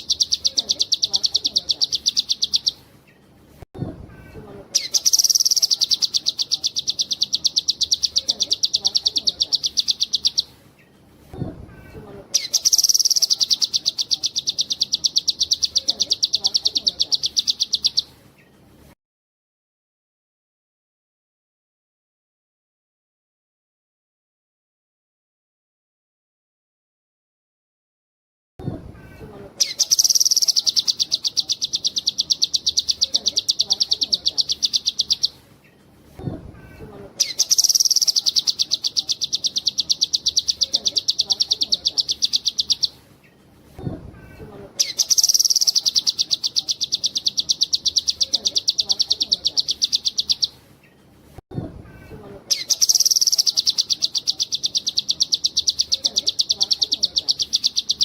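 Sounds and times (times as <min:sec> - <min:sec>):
bird singing fast trills: 0:00.0 - 0:02.8, 0:04.8 - 0:10.6, 0:12.4 - 0:18.2, 0:29.6 - 0:35.4, 0:37.2 - 0:43.0, 0:44.8 - 0:50.6, 0:52.5 - 0:58.0.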